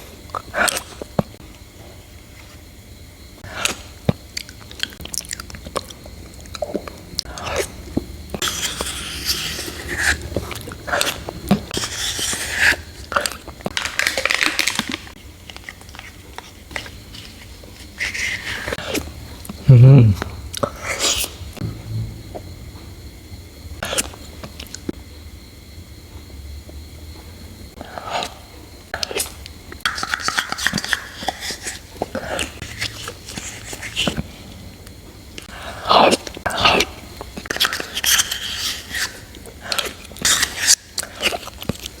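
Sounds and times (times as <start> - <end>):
chewing with clicks and smacks: 3.6 - 21.4, 29.0 - 42.0
wet mouth clicks and smacks: 29.9 - 31.7.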